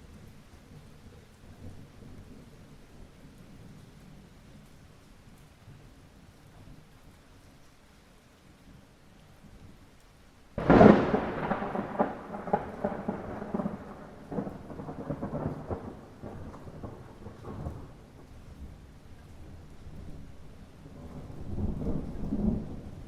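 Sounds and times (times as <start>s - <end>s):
light rain falling: 0.0s - 23.0s
thunder rumbling: 10.6s - 23.0s.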